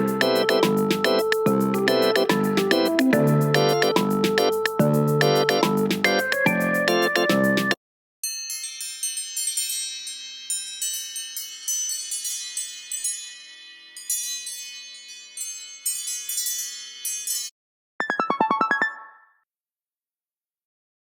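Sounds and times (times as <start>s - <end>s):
wind-chime ringtone: 8.2s - 17.6s.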